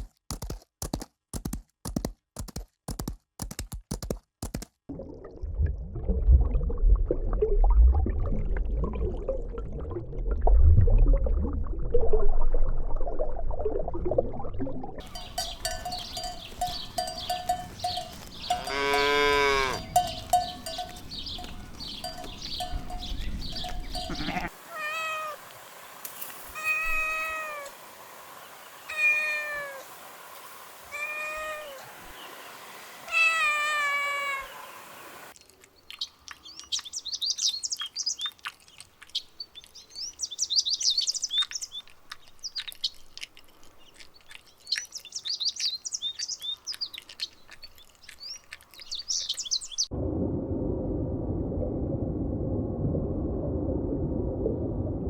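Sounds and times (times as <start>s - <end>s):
drawn-out animal call: 15.0s - 25.4s
cat meowing: 24.1s - 25.4s, 26.6s - 27.7s, 28.9s - 29.8s, 30.9s - 31.8s, 33.1s - 34.6s
low rumbling noise: 49.9s - 55.0s.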